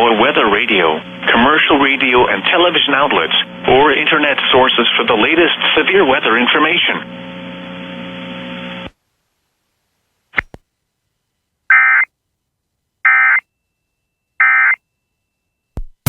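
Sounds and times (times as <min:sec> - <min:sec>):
steady radio hum: 0:00.0 - 0:08.9.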